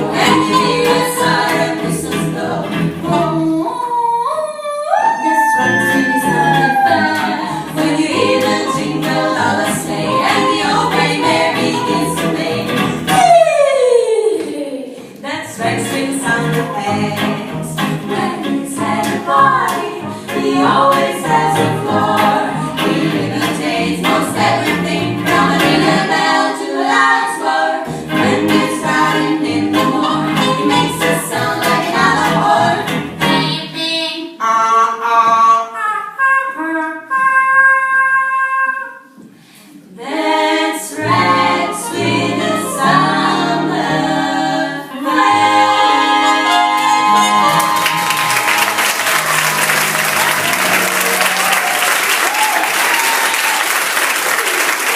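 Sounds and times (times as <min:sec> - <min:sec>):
musical accompaniment: 0:00.0 - 0:03.7, 0:05.3 - 0:13.5, 0:15.1 - 0:54.1
female vocal group singing: 0:00.0 - 0:34.4, 0:39.7 - 0:49.0.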